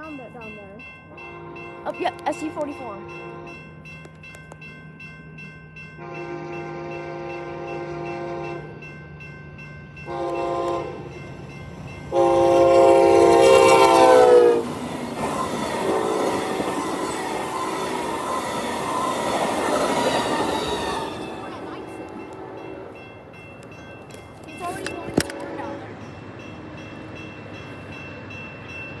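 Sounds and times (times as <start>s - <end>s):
train rushing over crossing: 0.0s - 29.0s
train horn blasts: 1.1s - 3.6s, 6.0s - 8.8s, 10.0s - 11.4s, 12.0s - 23.0s, 24.8s - 25.9s.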